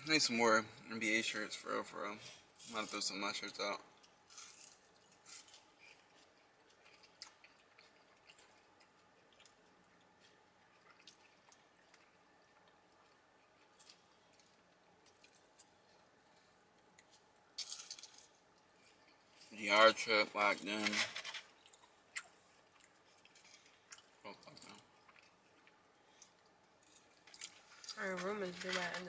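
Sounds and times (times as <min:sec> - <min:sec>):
wet chewing clicks: 0:04.0 - 0:15.8.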